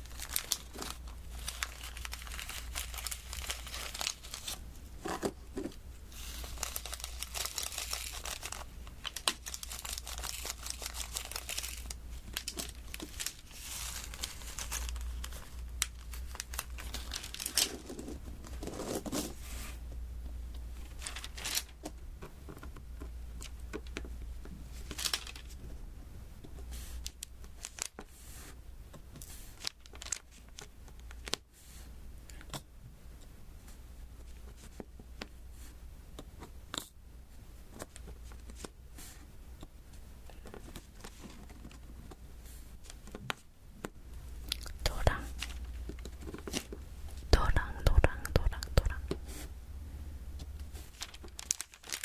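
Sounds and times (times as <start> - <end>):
plastic film crinkling and tearing: 0.0 - 4.6, 6.1 - 19.2, 20.9 - 21.8, 24.8 - 25.6, 27.0 - 28.0, 29.6 - 31.4, 50.8 - 52.0
steady low hum: 43.6 - 51.5.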